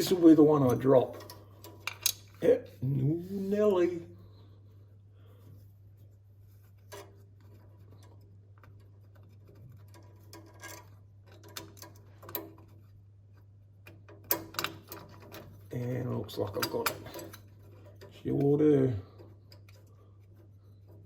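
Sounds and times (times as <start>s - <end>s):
small metal clicks and scrapes: 0.0s - 2.4s, 6.8s - 21.0s
steady low hum: 0.0s - 21.0s.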